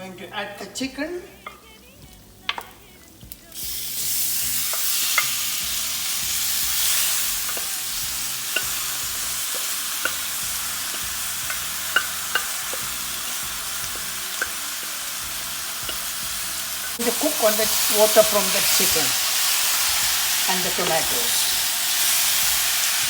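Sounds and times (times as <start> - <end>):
loud sizzle of frying: 2.0 - 23.0
spoon clicking against pan: 2.5 - 2.7, 9.5 - 14.9, 15.8 - 16.1.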